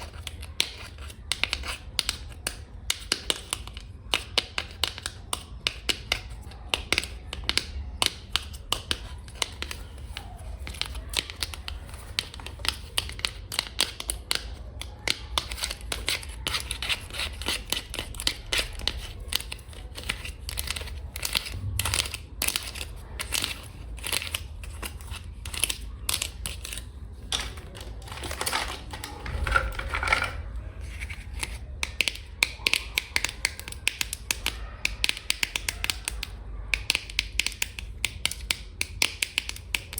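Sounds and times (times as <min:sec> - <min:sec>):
scratchy crinkling: 0:15.2 - 0:31.8.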